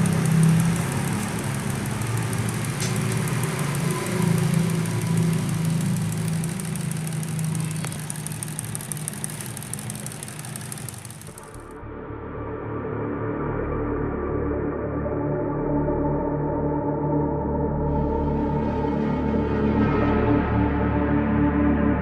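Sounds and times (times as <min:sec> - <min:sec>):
small electric fan motor humming: 0:00.0 - 0:11.8.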